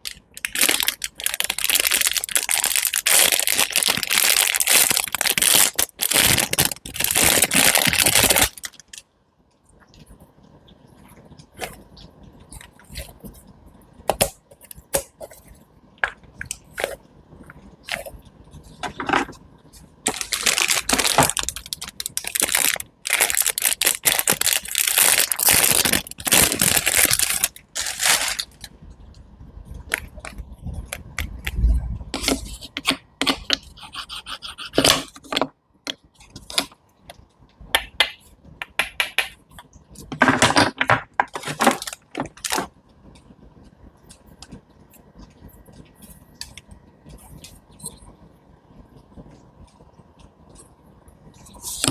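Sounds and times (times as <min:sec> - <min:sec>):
scraping and crunching: 0:17.8 - 0:28.7.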